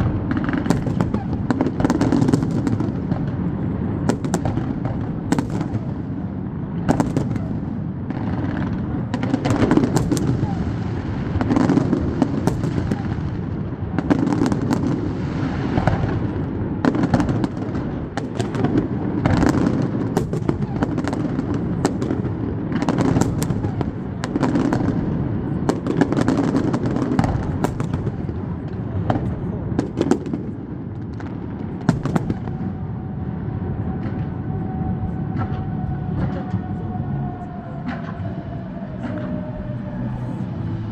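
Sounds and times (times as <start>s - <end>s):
fireworks bangs and crackles: 0.0s - 40.9s
murmur of crowd voices: 0.0s - 40.9s.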